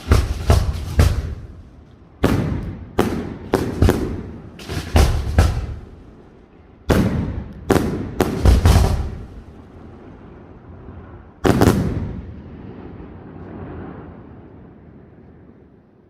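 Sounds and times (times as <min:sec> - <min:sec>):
firework shells bursting: 0:00.0 - 0:06.3, 0:06.9 - 0:09.7.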